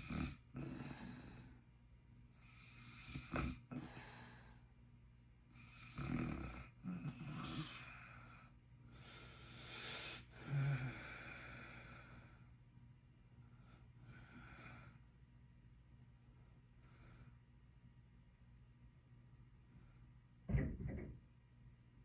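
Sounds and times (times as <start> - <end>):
man snoring: 0.0 - 1.5, 2.4 - 4.4, 5.5 - 8.4, 9.7 - 11.5.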